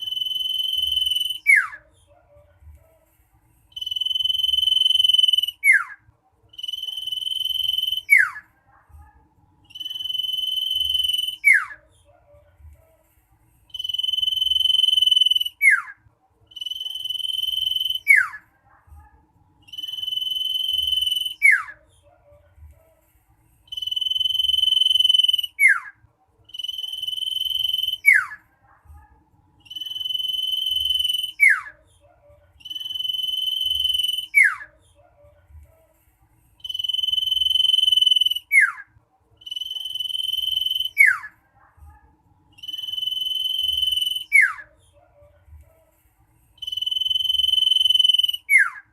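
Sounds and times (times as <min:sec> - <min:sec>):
bird whistling song: 0:00.0 - 0:01.8, 0:03.7 - 0:08.4, 0:09.7 - 0:11.8, 0:13.7 - 0:18.4, 0:19.7 - 0:21.8, 0:23.7 - 0:25.9, 0:26.5 - 0:28.4, 0:29.6 - 0:31.8, 0:32.6 - 0:34.7, 0:36.6 - 0:41.3, 0:42.6 - 0:44.7, 0:46.6 - 0:48.9.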